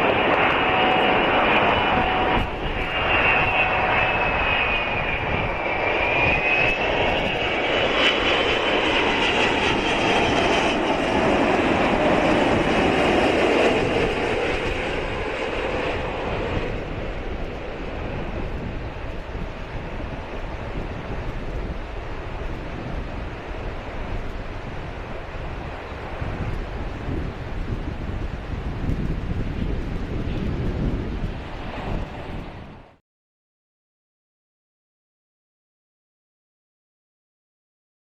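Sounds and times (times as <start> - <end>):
jet engines roaring with whine: 0.0 - 33.0
wind rumbling on microphone: 0.0 - 33.0.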